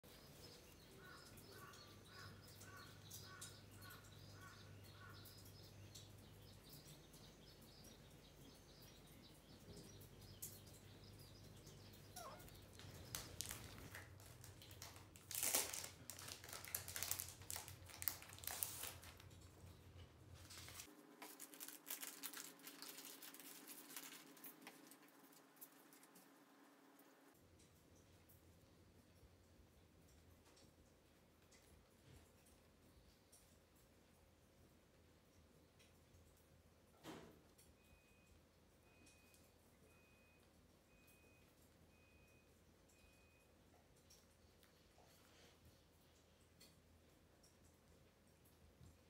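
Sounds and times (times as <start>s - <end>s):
small bird chirping: 0.1s - 14.8s.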